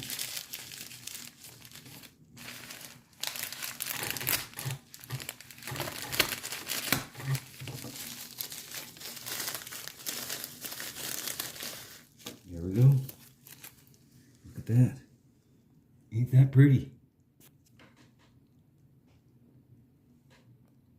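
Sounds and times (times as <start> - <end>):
packing material crinkling: 0.0 - 14.2.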